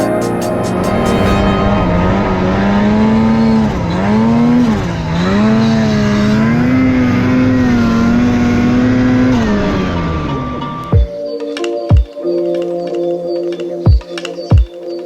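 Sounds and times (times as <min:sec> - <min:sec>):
snowmobile engine running: 0:00.0 - 0:10.9.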